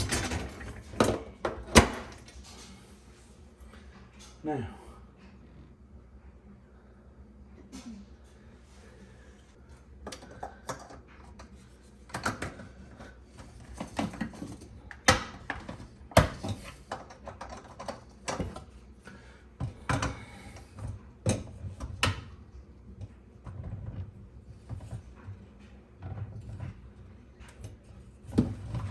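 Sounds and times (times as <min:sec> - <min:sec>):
dishwasher parts clicking and knocking: 0:00.0 - 0:02.4.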